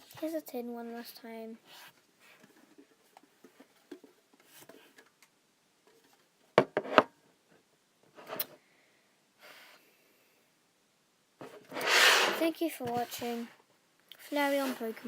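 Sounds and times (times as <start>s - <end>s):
rustling: 0.0s - 7.0s, 11.4s - 15.0s.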